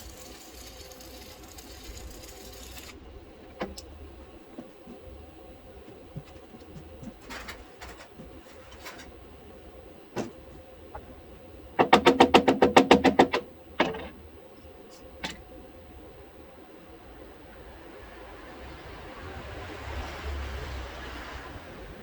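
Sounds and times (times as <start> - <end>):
sharp knocks: 11.8 - 14.1.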